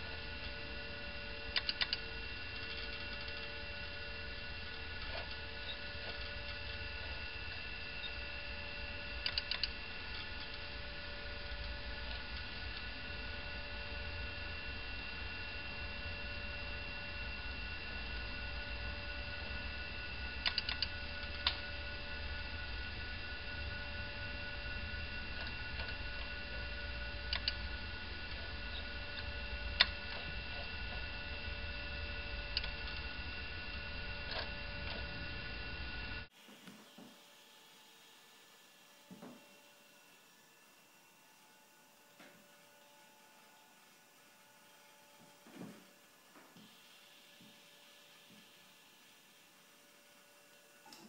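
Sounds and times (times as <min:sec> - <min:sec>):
electrical hum with whining tones: 0:00.0 - 0:51.0
sharp clicks: 0:01.5 - 0:02.0, 0:09.2 - 0:09.8, 0:20.4 - 0:21.6, 0:27.3 - 0:27.6.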